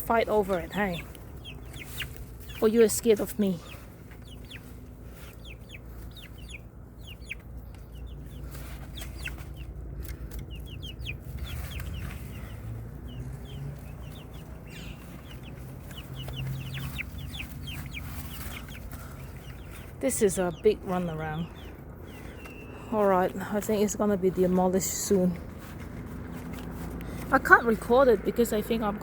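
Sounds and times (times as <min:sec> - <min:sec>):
chickens clucking: 0:00.0 - 0:29.0.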